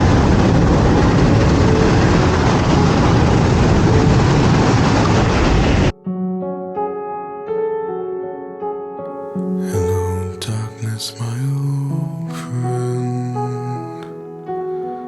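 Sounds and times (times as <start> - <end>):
loud rushing roar: 0.0 - 5.9
soft piano music: 0.0 - 15.0.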